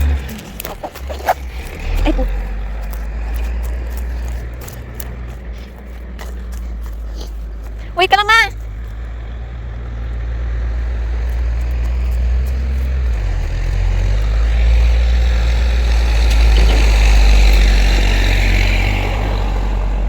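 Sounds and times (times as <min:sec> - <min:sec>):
vehicle passing with tyre noise: 0:00.0 - 0:20.0.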